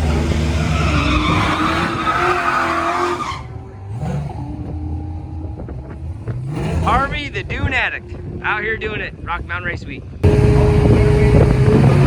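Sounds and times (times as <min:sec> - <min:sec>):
tyres squealing: 0:00.0 - 0:03.7
race car engine at high revs: 0:00.0 - 0:08.5, 0:09.1 - 0:12.0.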